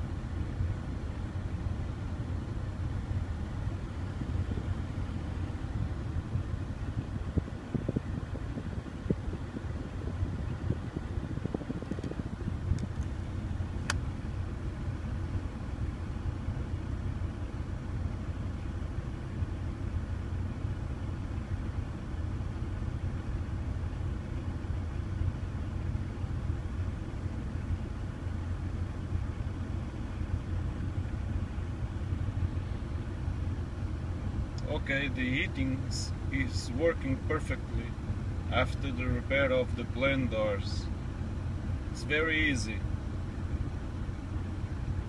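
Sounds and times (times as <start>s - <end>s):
diesel engine idling: 0.0s - 45.0s.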